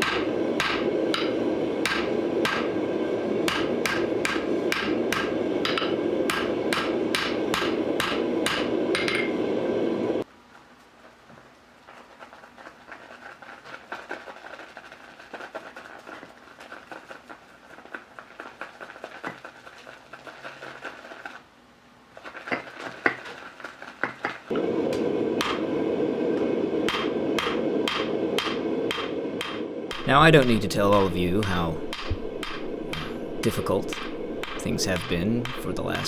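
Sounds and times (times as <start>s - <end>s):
loud steady rushing noise: 24.5s - 36.0s
thin steady tone: 29.9s - 36.0s.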